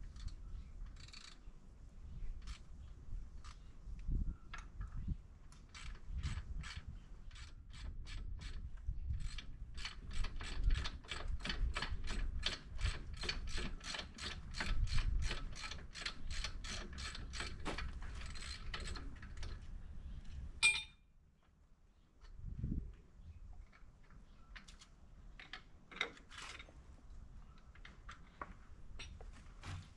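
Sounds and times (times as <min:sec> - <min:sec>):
ratchet clicking: 0:00.1 - 0:01.4
sharp metallic clink: 0:20.6 - 0:21.0.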